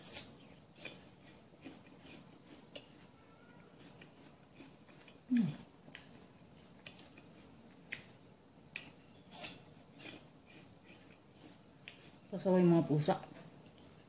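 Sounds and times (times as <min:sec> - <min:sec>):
crisp apple crunches: 0:00.0 - 0:08.1.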